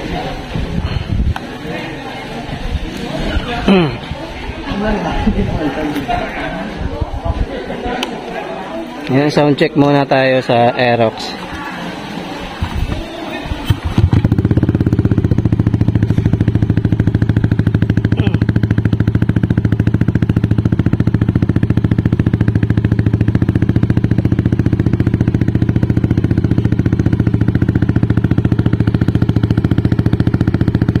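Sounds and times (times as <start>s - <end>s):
scooter engine idling: 11.8s - 31.0s.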